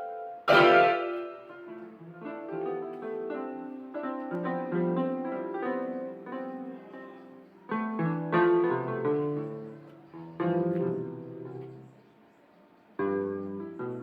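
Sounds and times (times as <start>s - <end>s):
electronic piano chords: 0.0s - 6.9s.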